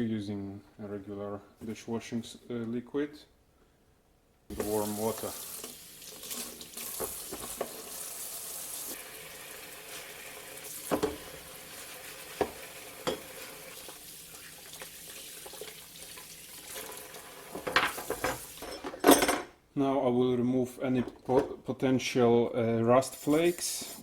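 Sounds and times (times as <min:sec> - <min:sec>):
hiss of washing water: 0:04.5 - 0:18.6, 0:23.2 - 0:24.0.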